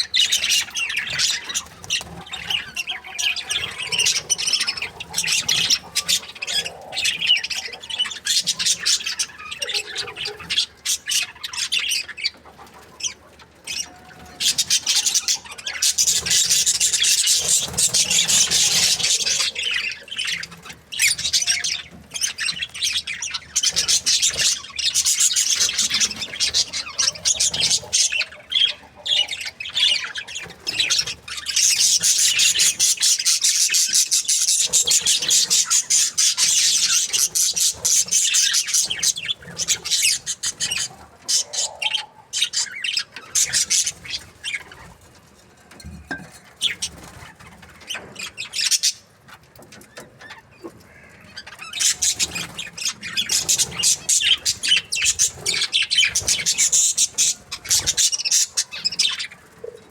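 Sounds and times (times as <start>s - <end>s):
budgerigars chirping and chattering: 0.0s - 59.9s.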